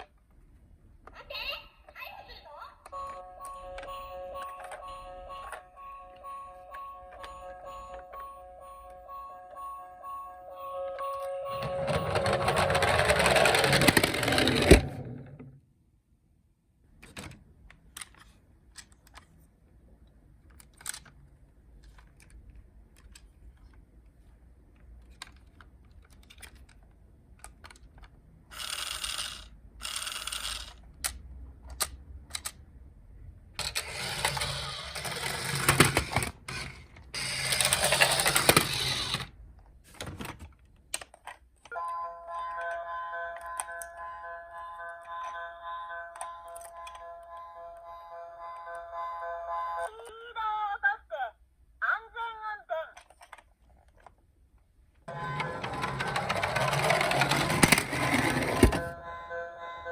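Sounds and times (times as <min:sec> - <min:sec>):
toy cars rattling down a slope: 0:11.7 - 0:14.9, 0:28.5 - 0:30.8, 0:33.6 - 0:39.3, 0:55.1 - 0:58.8.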